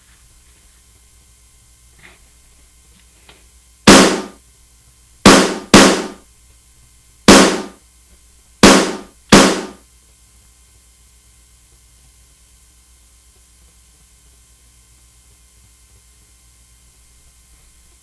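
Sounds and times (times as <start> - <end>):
electronic drum pad hits: 3.9 - 4.4, 5.3 - 6.2, 7.3 - 7.8, 8.6 - 9.8.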